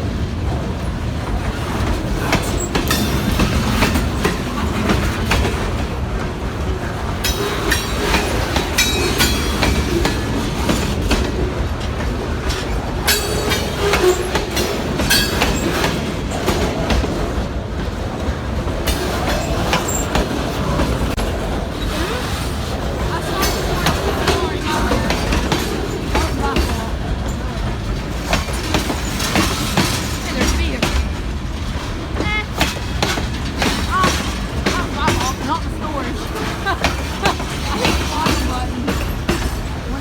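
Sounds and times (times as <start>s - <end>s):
freight train cars rumbling: 0.0s - 40.0s
wheels clattering over rail joints: 0.0s - 40.0s.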